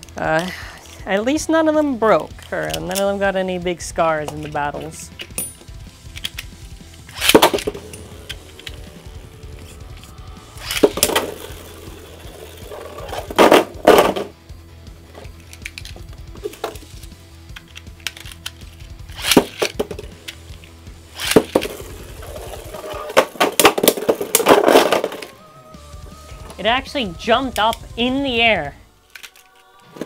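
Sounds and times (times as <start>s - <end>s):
background music: 0.0s - 30.0s
spinning tops clashing: 4.4s - 14.1s.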